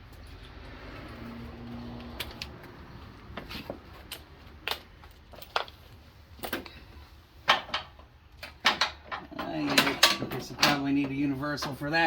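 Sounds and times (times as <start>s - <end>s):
hand tools clinking and knocking: 6.4s - 12.0s.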